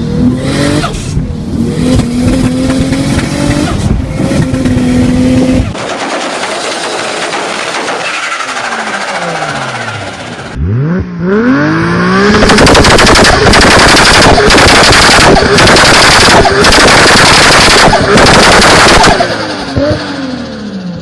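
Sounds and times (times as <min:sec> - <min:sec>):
car engine revving: 0:00.0 - 0:05.8, 0:08.1 - 0:21.0
rapid exhaust bangs: 0:12.3 - 0:20.0.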